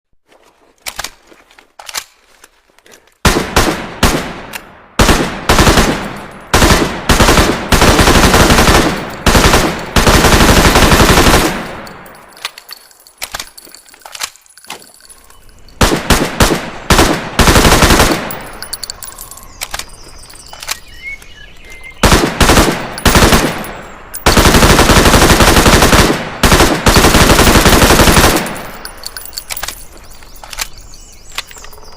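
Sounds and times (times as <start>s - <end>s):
gun clicks: 0.8s - 3.2s, 4.4s - 4.8s, 10.7s - 16.2s, 16.9s - 24.5s, 26.9s - 31.9s
submachine gun firing bursts: 3.2s - 12.1s, 15.8s - 18.8s, 22.0s - 29.2s.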